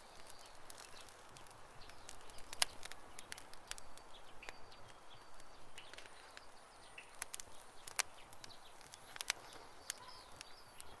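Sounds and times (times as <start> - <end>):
campfire crackling: 0.0 - 11.0
sharp fire pops: 0.0 - 11.0.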